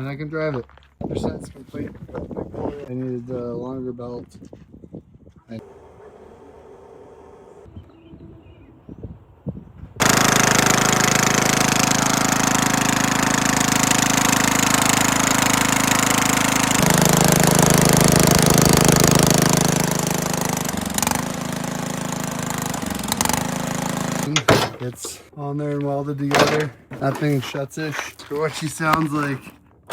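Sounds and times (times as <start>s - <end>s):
lawn mower engine rattling: 10.0s - 25.3s.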